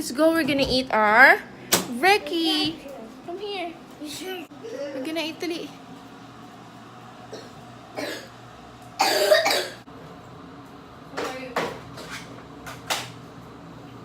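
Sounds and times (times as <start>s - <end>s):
child coughing: 7.3s - 8.3s, 9.0s - 9.8s.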